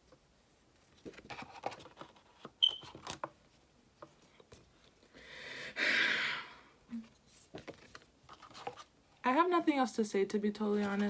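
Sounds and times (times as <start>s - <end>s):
paper and plastic rustling: 0.8s - 5.0s, 7.1s - 9.0s, 10.6s - 11.0s.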